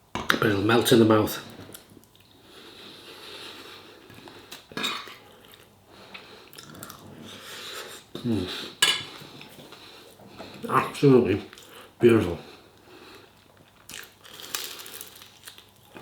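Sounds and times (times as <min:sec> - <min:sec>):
person breathing: 0:02.4 - 0:04.5, 0:05.9 - 0:10.7
person chewing: 0:03.5 - 0:10.6, 0:13.0 - 0:16.0.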